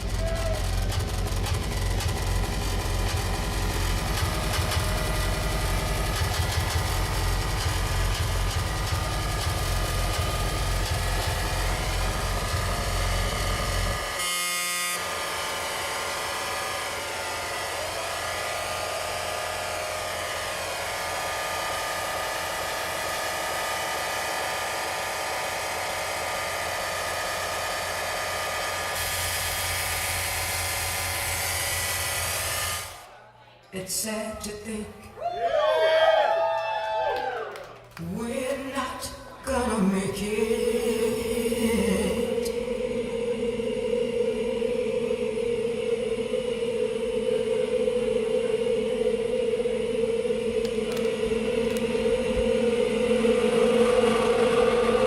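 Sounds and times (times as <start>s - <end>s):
heavy low rumble: 0.0s - 14.2s, 40.4s - 55.0s
sustained droning tones: 0.0s - 33.2s, 38.6s - 55.0s
distorted noise music: 0.0s - 33.3s, 38.2s - 55.0s.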